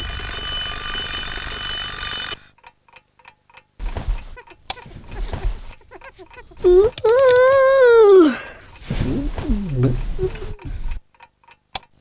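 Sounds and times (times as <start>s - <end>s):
alarm clock ringing: 0.0s - 2.6s
soft knocks and low thumps: 3.8s - 5.9s, 8.9s - 11.0s.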